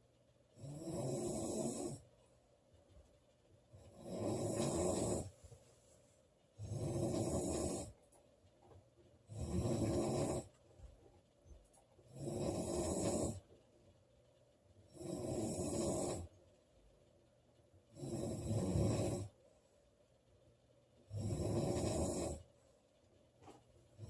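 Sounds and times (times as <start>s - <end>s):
woman snoring loudly: 0.6s - 2.0s, 3.9s - 5.3s, 6.6s - 7.9s, 9.3s - 10.5s, 12.1s - 13.4s, 15.0s - 16.3s, 18.0s - 19.3s, 21.1s - 22.4s.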